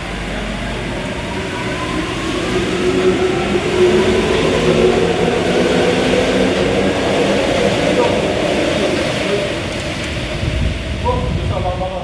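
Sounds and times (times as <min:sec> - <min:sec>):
metro train running in tunnel: 0:00.0 - 0:12.0.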